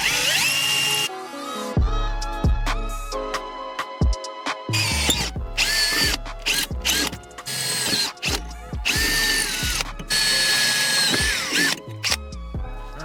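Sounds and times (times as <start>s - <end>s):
electric drill whining: 0.0s - 1.1s, 4.8s - 12.2s
background music with steady beat: 0.0s - 13.0s.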